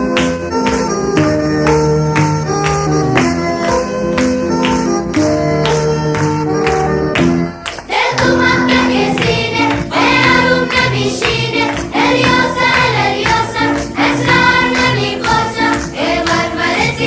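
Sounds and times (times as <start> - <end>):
voices singing over instruments: 7.9 - 17.0.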